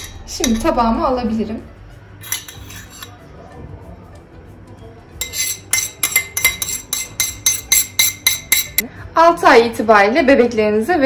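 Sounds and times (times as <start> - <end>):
metal spoon clinking on pot: 0.0 - 0.8, 2.2 - 3.2, 5.2 - 8.8.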